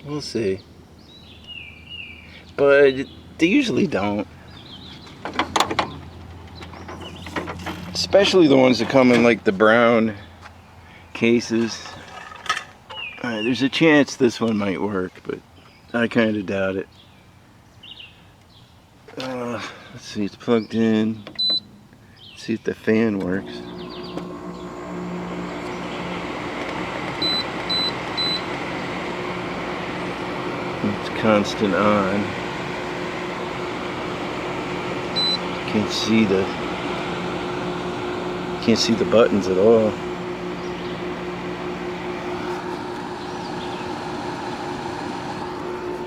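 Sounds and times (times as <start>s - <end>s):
dehumidifier fan humming: 23.2s - 46.0s.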